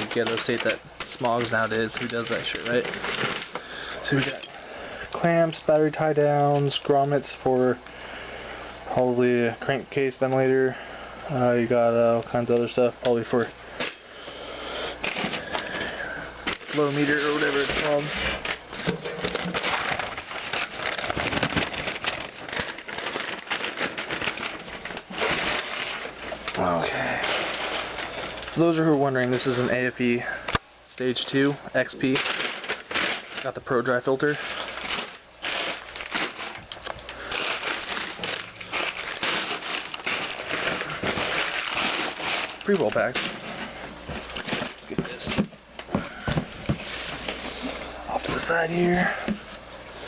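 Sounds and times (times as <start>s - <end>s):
packing material crinkling: 0.0s - 7.3s, 15.0s - 49.7s
plastic bags rustling: 0.0s - 7.4s, 9.9s - 50.0s.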